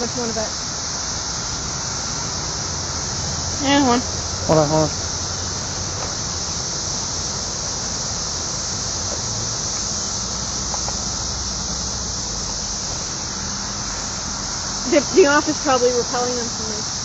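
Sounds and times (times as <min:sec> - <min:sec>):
cicadas chorus: 0:00.0 - 0:17.0.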